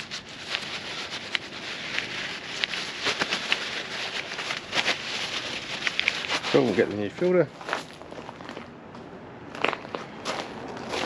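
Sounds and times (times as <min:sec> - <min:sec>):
rag wiping plastic parts: 0:00.0 - 0:07.3.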